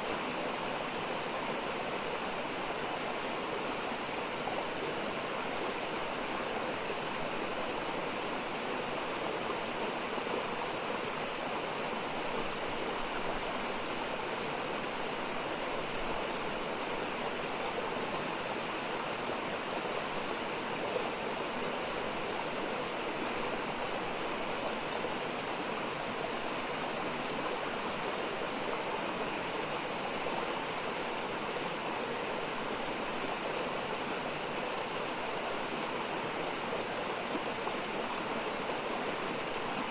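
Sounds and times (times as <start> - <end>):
stream rushing over rocks: 0.0 - 39.9.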